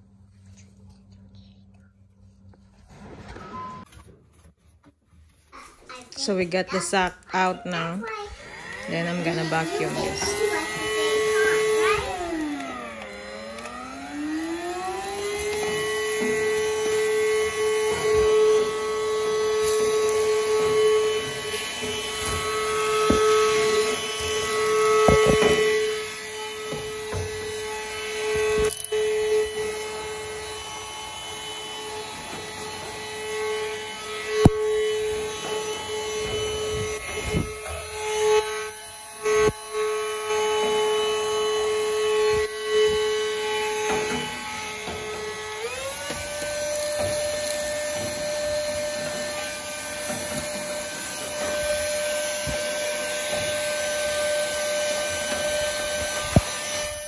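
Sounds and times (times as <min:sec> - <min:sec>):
vacuum cleaner whine: 0:02.7 - 0:04.5, 0:06.1 - 0:57.0
nozzle knocking and scraping: 0:19.6 - 0:27.6.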